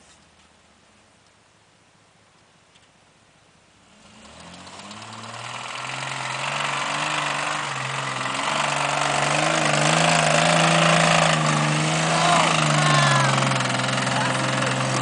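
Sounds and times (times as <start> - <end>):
truck engine running under load: 3.9 - 15.0.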